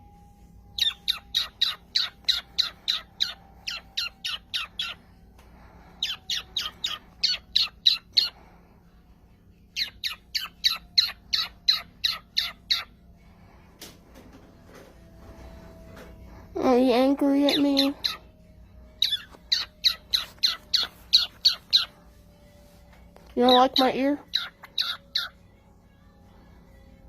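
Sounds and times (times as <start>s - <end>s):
parrot squawking: 0.8s - 5.0s, 6.0s - 8.4s, 9.8s - 12.9s, 17.4s - 18.3s, 19.0s - 21.9s, 23.4s - 25.4s.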